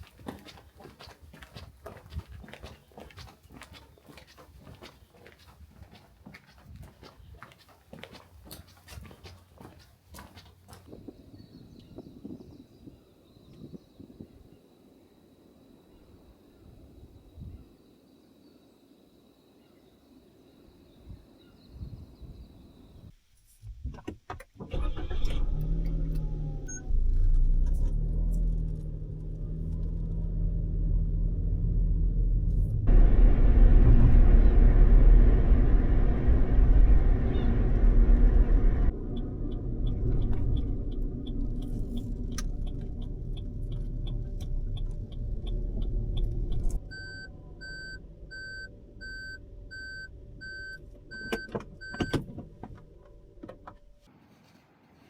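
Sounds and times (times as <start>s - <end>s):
car engine idling: 26.5s - 54.0s
loud rushing noise: 32.8s - 38.9s
electronic warning chime beeping: 46.9s - 52.2s.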